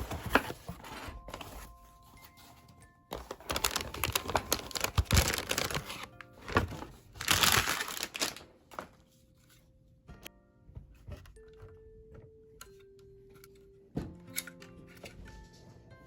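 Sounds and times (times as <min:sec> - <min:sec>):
hands handling plastic packaging: 0:00.0 - 0:09.6
quiet background music: 0:00.0 - 0:16.0.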